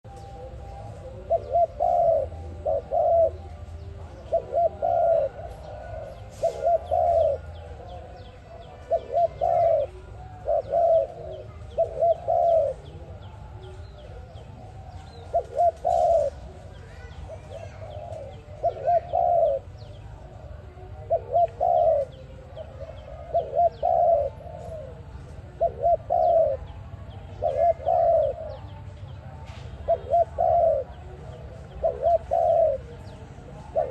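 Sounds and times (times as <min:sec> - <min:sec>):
dove cooing: 0:00.0 - 0:33.9
small birds chirping: 0:00.0 - 0:33.9.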